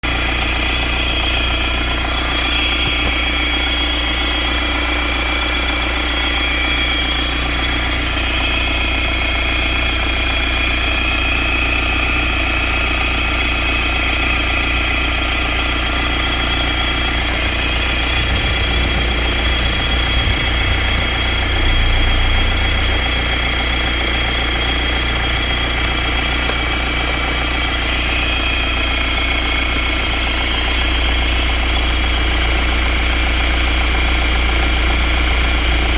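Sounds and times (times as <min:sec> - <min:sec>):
diesel engine idling: 0:00.0 - 0:35.9
high-pitched whine: 0:14.1 - 0:30.8.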